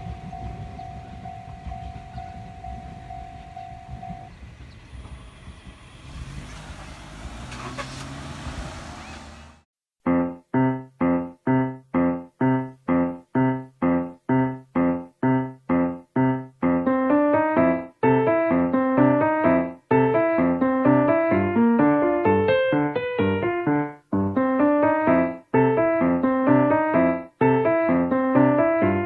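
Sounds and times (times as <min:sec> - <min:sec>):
piano chords: 0:00.0 - 0:04.6, 0:10.0 - 0:29.0
train rumbling past: 0:00.0 - 0:09.6.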